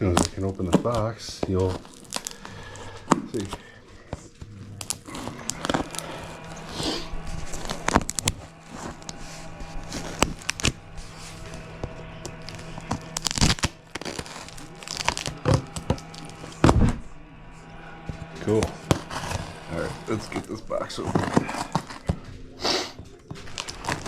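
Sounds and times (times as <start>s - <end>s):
tearing and crinkling packaging: 0.0s - 17.0s, 17.6s - 24.0s
background music: 0.0s - 24.0s.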